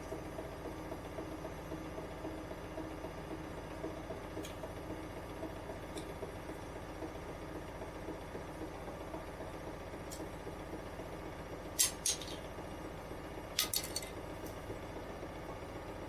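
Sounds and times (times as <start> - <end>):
washing machine running: 0.0 - 16.0
short sharp clinks: 13.6 - 14.1.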